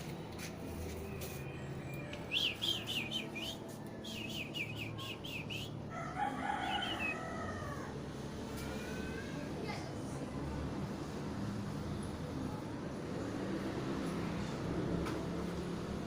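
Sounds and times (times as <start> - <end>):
baby bird high chirps: 2.3 - 5.7.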